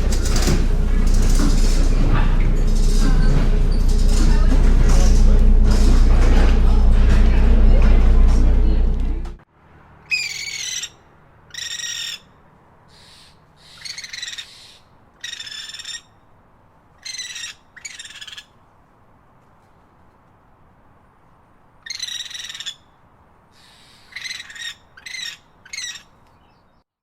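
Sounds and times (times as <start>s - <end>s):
bird calling: 10.0s - 16.3s, 21.8s - 23.0s, 23.6s - 26.8s.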